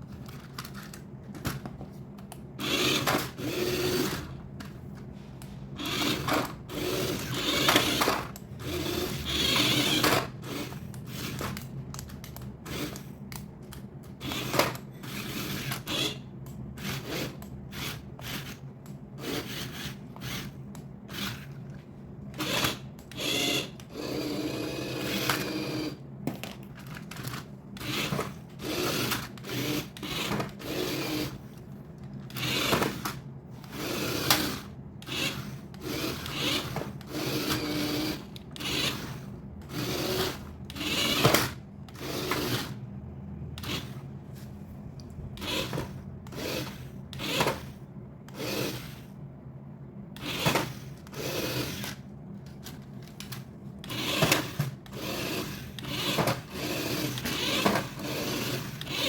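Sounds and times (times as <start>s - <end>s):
handling noises rubbing and clicking: 0.0s - 3.4s, 26.3s - 39.0s, 50.2s - 59.0s.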